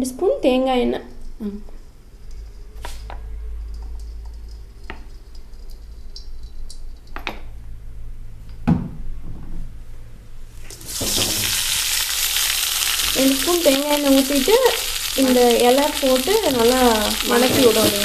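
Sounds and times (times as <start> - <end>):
leaves sizzling in hot oil: 10.6 - 18.0.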